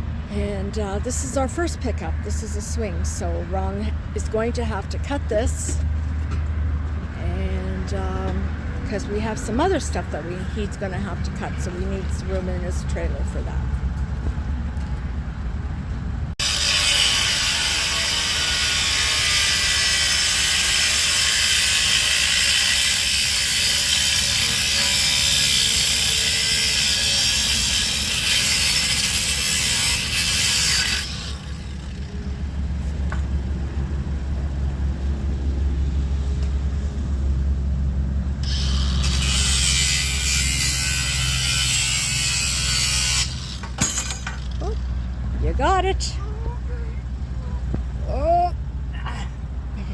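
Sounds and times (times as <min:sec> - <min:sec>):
power tool cutting metal: 0:16.4 - 0:32.1, 0:38.4 - 0:44.6.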